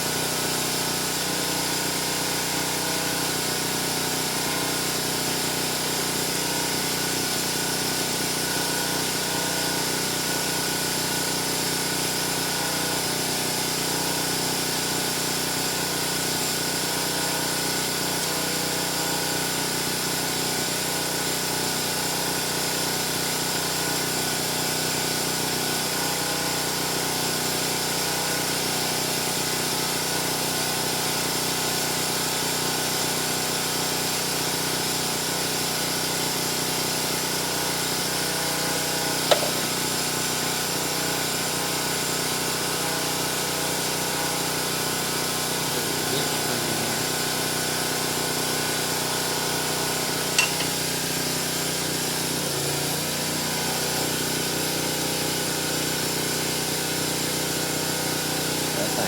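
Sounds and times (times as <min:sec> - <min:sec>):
small motor humming: 0:42.5 - 0:55.6.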